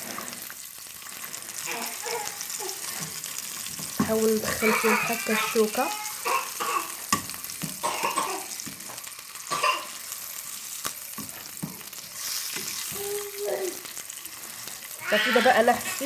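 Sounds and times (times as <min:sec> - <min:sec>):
food sizzling in a pan: 0:00.0 - 0:16.0
utensil scraping a pan: 0:09.9 - 0:13.0.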